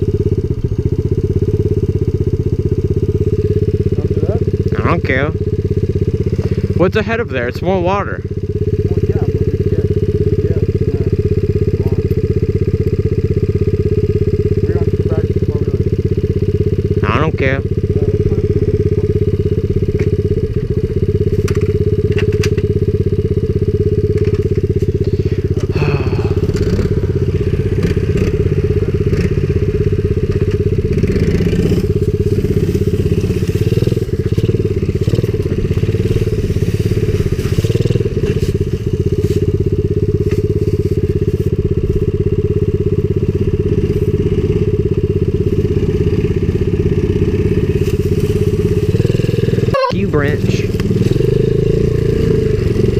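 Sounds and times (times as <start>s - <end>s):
motorbike engine running: 0.0s - 52.9s
brush cracking under wheels: 35.0s - 41.6s, 47.7s - 49.2s.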